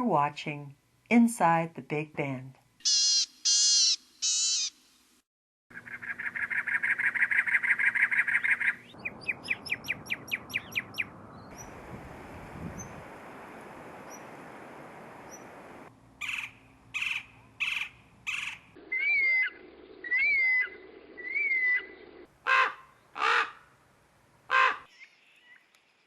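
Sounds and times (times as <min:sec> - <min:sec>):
faint high bird chirps: 0:05.7 - 0:11.7, 0:16.2 - 0:22.2
harsh bird calls: 0:05.7 - 0:11.8, 0:16.2 - 0:23.6
steady hiss: 0:11.6 - 0:15.9
whistled bird notes: 0:16.2 - 0:22.0.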